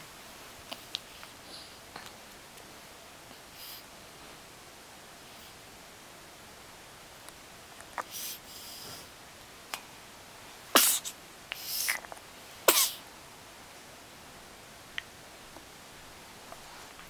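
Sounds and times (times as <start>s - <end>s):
sharp sneezes: 10.7s - 12.0s, 12.7s - 13.0s.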